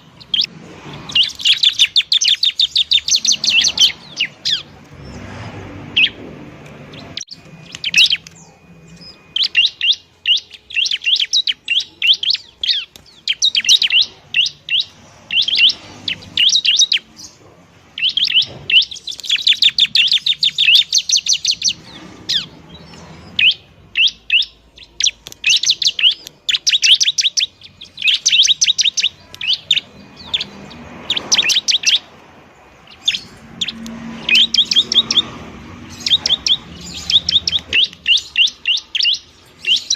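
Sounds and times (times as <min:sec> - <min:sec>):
bird singing high chip notes: 0:00.0 - 0:39.9.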